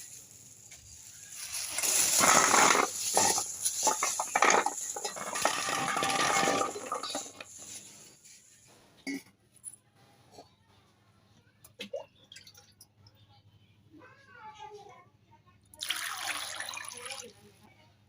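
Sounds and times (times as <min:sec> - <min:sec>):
dishes clattering: 0:02.2 - 0:07.5.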